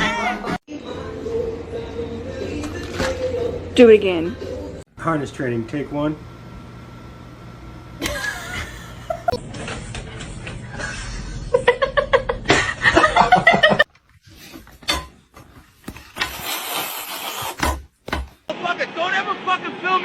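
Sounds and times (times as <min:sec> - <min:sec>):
people laughing: 0:08.0 - 0:09.4, 0:10.7 - 0:13.9.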